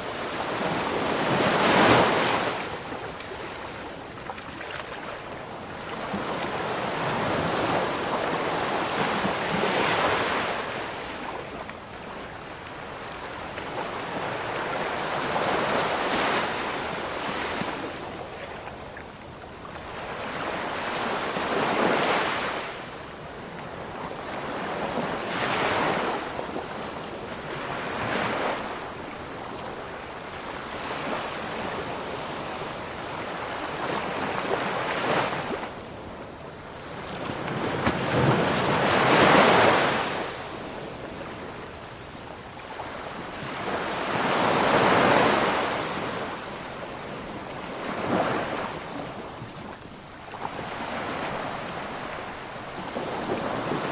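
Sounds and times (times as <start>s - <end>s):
ocean waves breaking: 42.8s - 53.9s.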